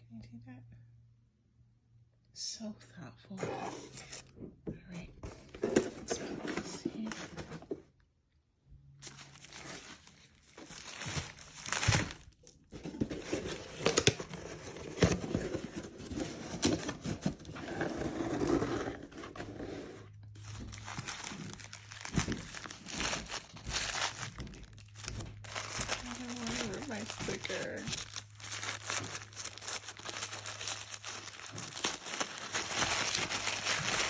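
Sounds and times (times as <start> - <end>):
packaging crinkling and rustling: 5.2 - 7.8, 9.0 - 34.0
packaging tearing: 9.0 - 19.7, 20.4 - 34.0.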